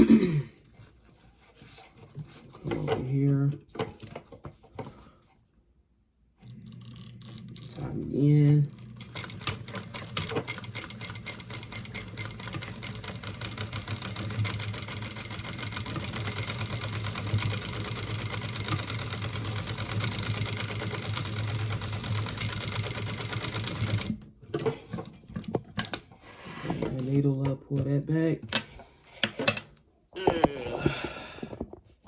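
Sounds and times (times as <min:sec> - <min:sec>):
sewing machine stitching: 0:06.4 - 0:25.1.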